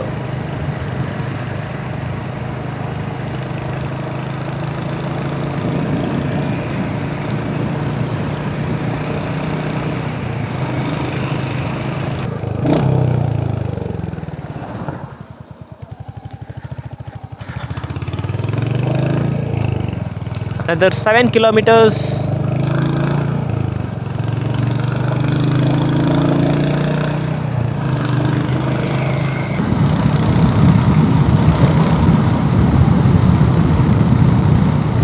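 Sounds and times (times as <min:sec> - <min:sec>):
motorcycle engine running: 0:00.0 - 0:35.0
road noise: 0:00.0 - 0:35.0.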